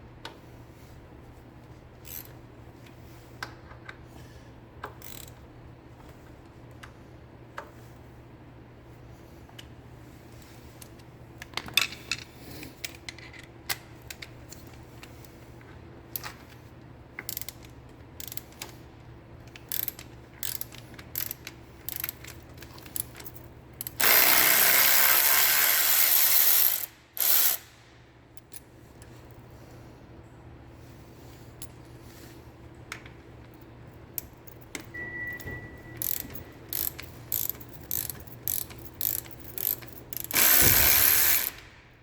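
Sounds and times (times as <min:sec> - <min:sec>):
ratchet wrench clicking: 0:02.0 - 0:02.4, 0:04.9 - 0:05.4, 0:17.2 - 0:18.7, 0:19.5 - 0:27.8, 0:36.0 - 0:41.7.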